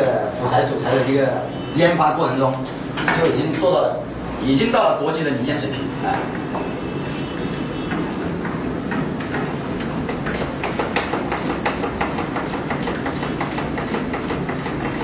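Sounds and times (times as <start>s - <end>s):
irregular knocking and clicking: 7.9s - 15.0s.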